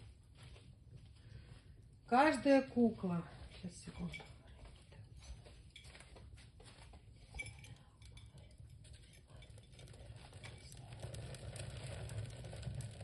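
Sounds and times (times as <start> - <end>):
small objects clinking and knocking: 5.2 - 13.0.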